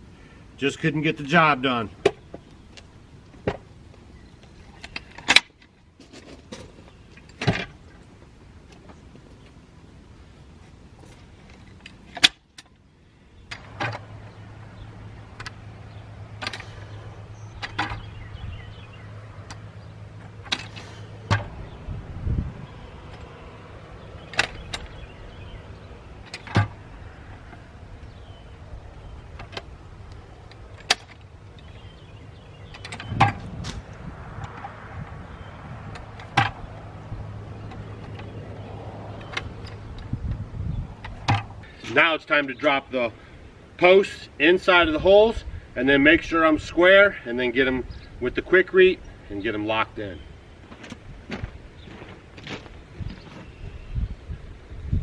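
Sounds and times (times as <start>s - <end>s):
post-hole digger striking ground: 20.3s - 21.8s.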